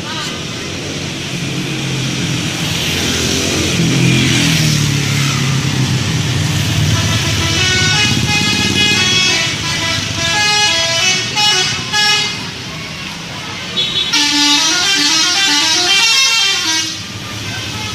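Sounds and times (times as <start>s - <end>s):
bus engine running: 0.0s - 17.9s
multi-tone musical horn: 6.8s - 12.4s, 14.1s - 17.1s.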